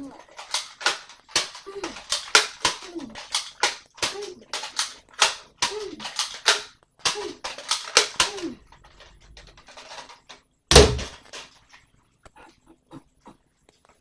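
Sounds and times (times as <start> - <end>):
heavy bang: 10.7 - 11.2
video game gunshots: 10.7 - 11.2.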